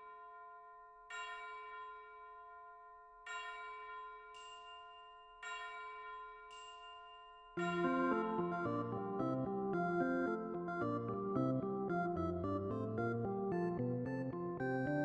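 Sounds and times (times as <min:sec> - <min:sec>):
soft bell-like chimes: 0:00.0 - 0:12.6.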